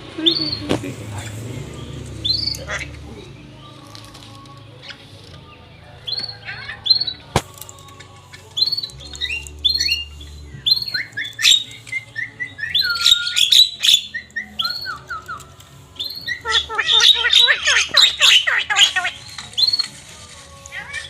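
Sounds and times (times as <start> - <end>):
myna chirps and squawks: 8.4 - 19.9.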